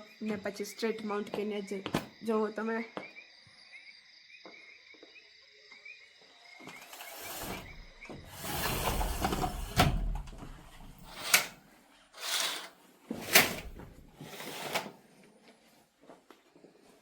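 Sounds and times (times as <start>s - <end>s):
door scraping: 6.7s - 11.6s, 12.2s - 14.9s
door knocks and clicks: 7.1s - 11.5s.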